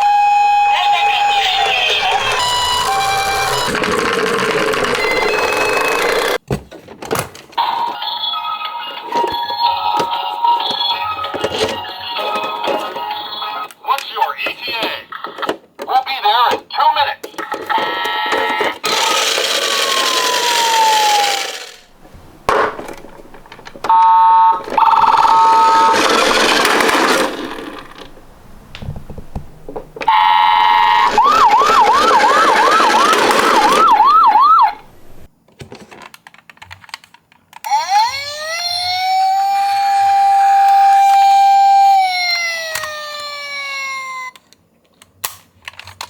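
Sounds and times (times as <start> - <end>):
toy ambulance siren: 0.0 - 6.4, 17.7 - 21.9, 22.6 - 28.1, 30.0 - 34.9, 37.6 - 44.5
noisy hiss: 21.8 - 25.6, 26.2 - 30.9, 34.7 - 35.4.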